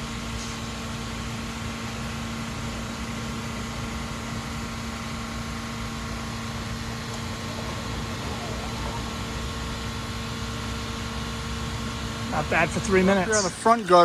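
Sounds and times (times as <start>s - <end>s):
pressure washer motor hum: 0.0s - 14.0s
water jet hissing: 4.6s - 14.0s.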